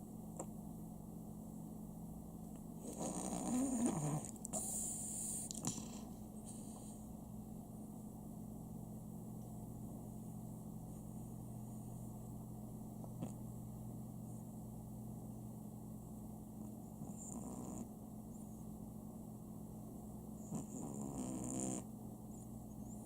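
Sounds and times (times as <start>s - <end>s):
steady low hum: 0.0s - 23.0s
dog snoring: 2.8s - 6.9s, 17.0s - 17.9s, 20.4s - 21.9s.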